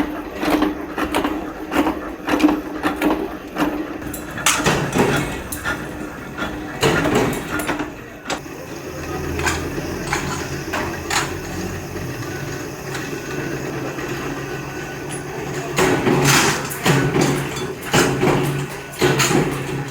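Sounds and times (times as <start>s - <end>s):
machine motor humming: 4.0s - 19.9s
metal knocks and clanks: 4.0s - 19.9s.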